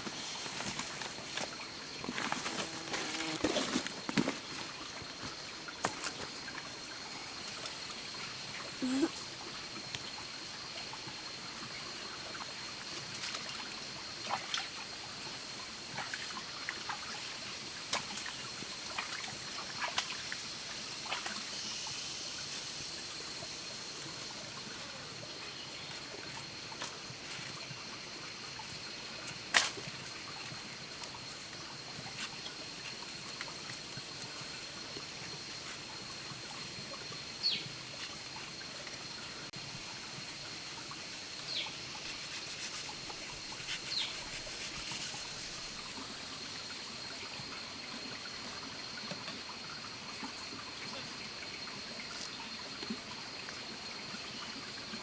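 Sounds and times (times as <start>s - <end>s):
trickling water: 0.0s - 55.0s.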